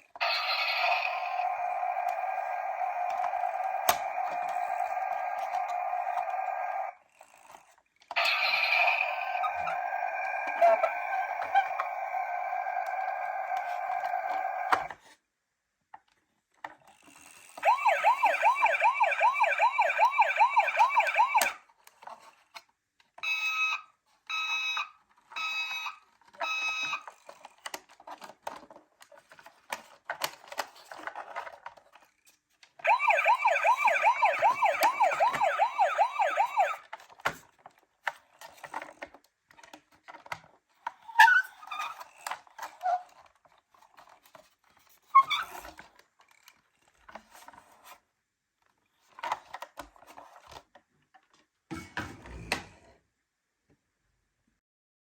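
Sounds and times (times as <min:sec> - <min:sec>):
toy electronic siren: 0:00.2 - 0:07.0, 0:08.2 - 0:14.9, 0:17.6 - 0:21.6, 0:23.2 - 0:27.2, 0:32.8 - 0:37.1.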